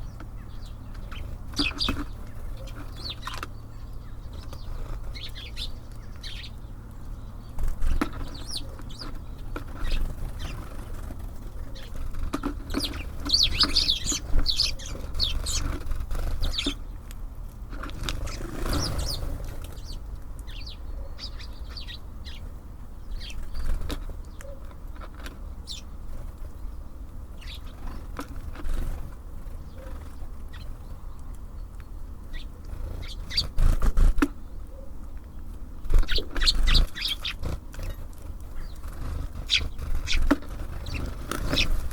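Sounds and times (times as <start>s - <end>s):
birds tapping and pecking: 0.0s - 41.9s
songbirds chirping: 0.0s - 41.9s
wing flutters: 17.7s - 20.0s, 35.8s - 41.9s.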